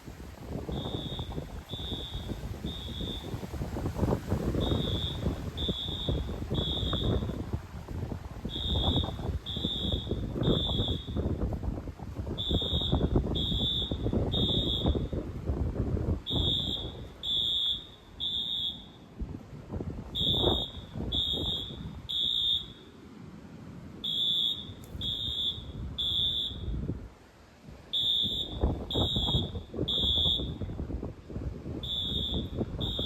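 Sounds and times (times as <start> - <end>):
fire alarm beeping: 0.6 - 3.6, 4.4 - 7.4, 8.4 - 11.4, 12.4 - 15.2, 16.3 - 19.1, 20.2 - 22.9, 24.0 - 26.8, 28.0 - 30.6, 31.8 - 33.0.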